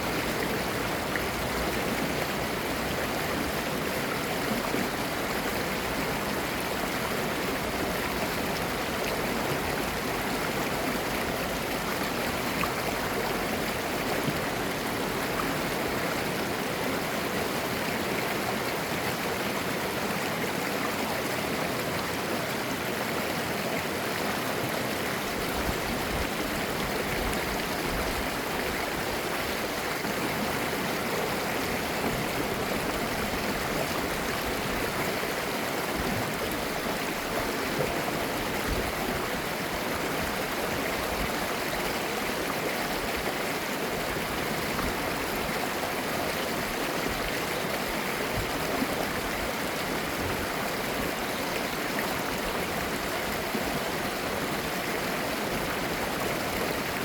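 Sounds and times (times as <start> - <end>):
stream water over rocks: 0.0 - 57.0.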